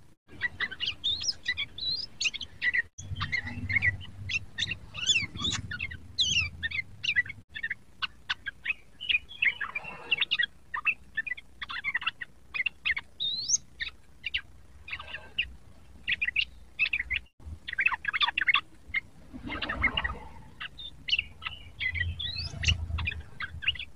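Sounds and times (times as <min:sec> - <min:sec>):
bulbul singing chattering notes: 0:00.3 - 0:15.5.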